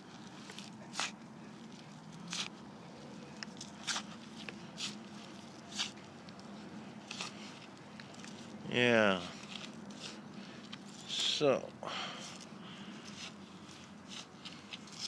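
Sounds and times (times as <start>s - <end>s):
shovel scraping soil: 0.4s - 1.2s, 3.6s - 6.0s, 7.0s - 7.6s, 9.2s - 11.4s, 12.2s - 15.0s.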